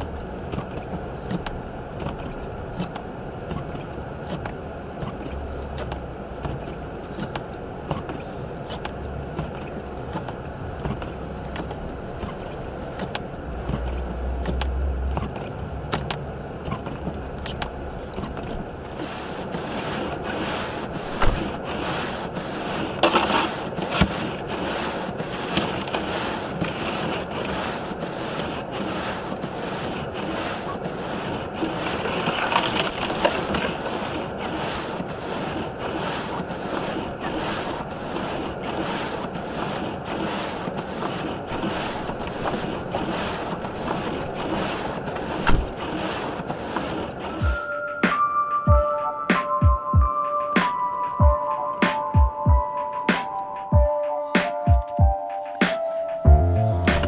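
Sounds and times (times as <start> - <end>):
tyre noise: 36.2 - 57.0.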